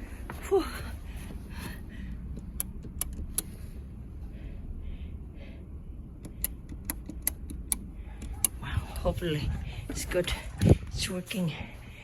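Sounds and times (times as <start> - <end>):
sharp metallic clicks: 2.2 - 3.6, 6.1 - 9.1
wind rumble on microphone: 8.0 - 11.6.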